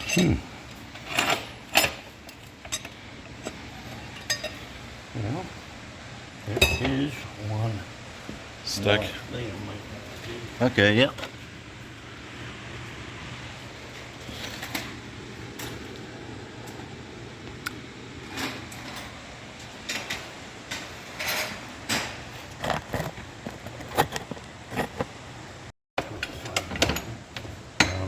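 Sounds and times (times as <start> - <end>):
metal tools clinking: 0.0 - 4.8
low hum of shop: 0.0 - 28.0.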